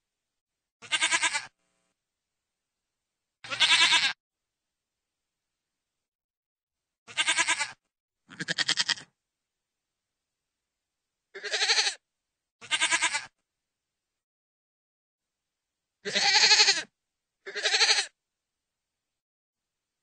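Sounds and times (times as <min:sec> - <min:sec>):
goat bleating: 0:00.8 - 0:01.5, 0:03.4 - 0:04.2, 0:07.1 - 0:09.1, 0:11.4 - 0:12.0, 0:12.6 - 0:13.4, 0:16.0 - 0:18.2.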